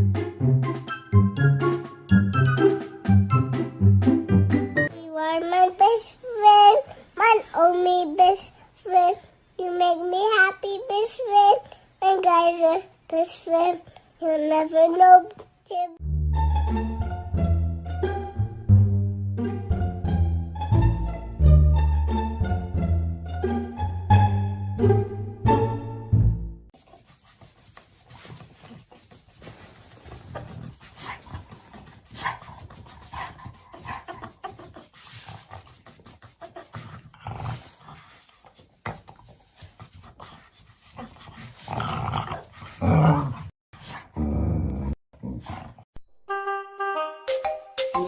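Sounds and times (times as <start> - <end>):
music: 0.0 - 5.0, 16.0 - 26.7, 46.3 - 48.0
dog making noises: 26.9 - 44.2.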